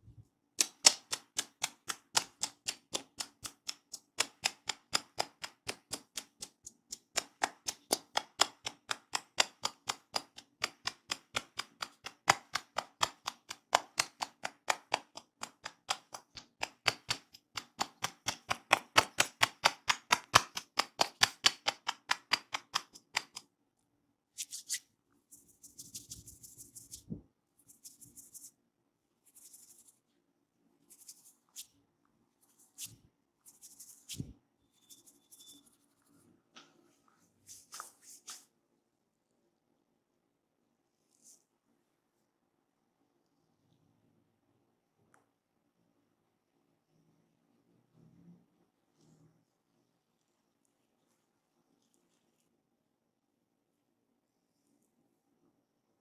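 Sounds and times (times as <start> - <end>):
hand tapping slaps: 0.6 - 23.4
soft scratchy rubbing: 30.8 - 38.5, 48.9 - 52.6.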